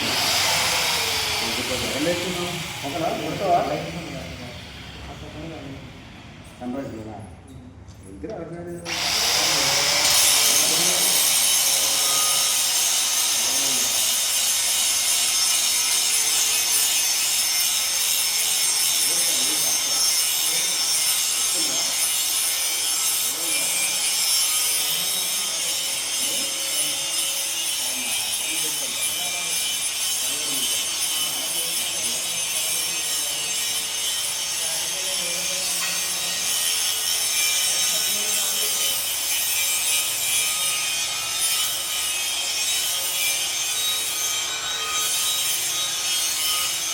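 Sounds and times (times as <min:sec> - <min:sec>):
abrasive rasping on metal: 0:10.0 - 0:46.9.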